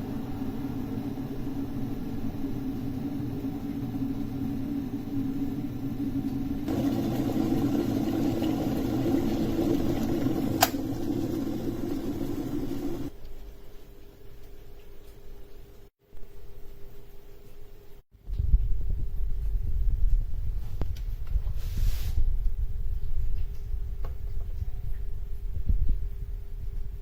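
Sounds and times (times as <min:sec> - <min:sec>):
kettle water rumbling: 0:00.2 - 0:13.1
kettle switch click: 0:10.5 - 0:10.9.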